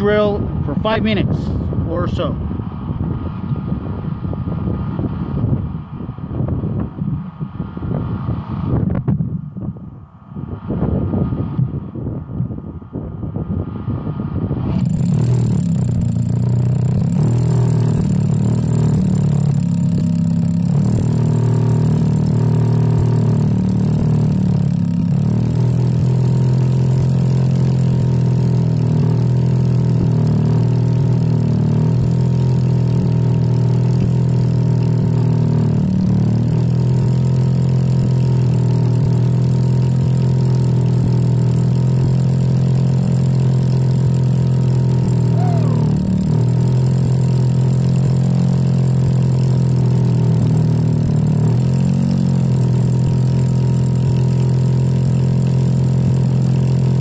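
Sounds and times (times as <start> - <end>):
rotary hammer drilling into rock: 14.7 - 57.0.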